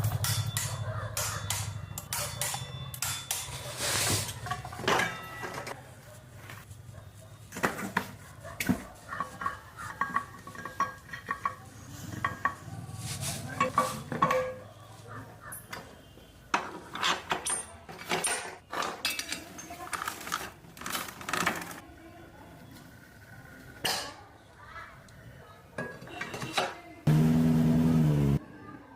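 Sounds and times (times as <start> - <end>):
metal clinks and clanks: 0.0 - 5.8.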